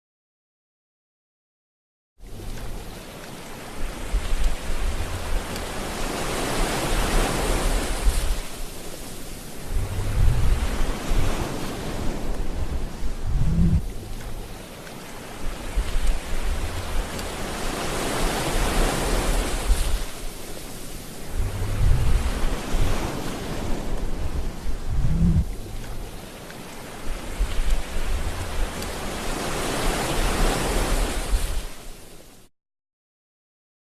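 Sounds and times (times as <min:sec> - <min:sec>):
sea waves washing: 0:02.2 - 0:32.4
low rumbling: 0:09.6 - 0:14.6, 0:15.4 - 0:17.6, 0:21.2 - 0:26.3, 0:27.2 - 0:29.1.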